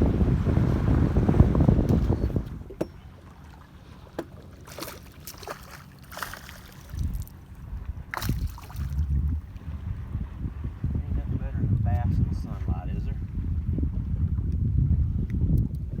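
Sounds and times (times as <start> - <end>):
wind gusts on microphone: 0.0 - 2.8, 6.4 - 16.0
steady low hum: 0.0 - 16.0.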